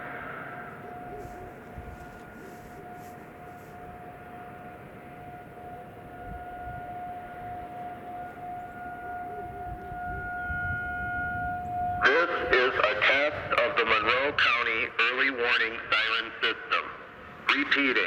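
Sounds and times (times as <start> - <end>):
distant warning siren: 0.0 - 18.0
low traffic rumble: 0.0 - 18.0.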